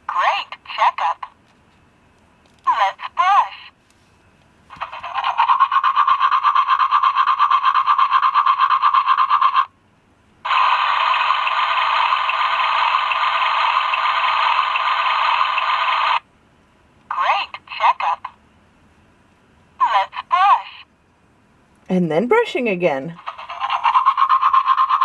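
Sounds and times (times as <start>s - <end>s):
pulsing toy toothbrush sound: 4.7s - 9.7s, 10.5s - 16.2s, 23.2s - 25.0s
hissing toy water-pick sound: 4.8s - 9.7s, 10.5s - 16.2s, 23.2s - 25.0s.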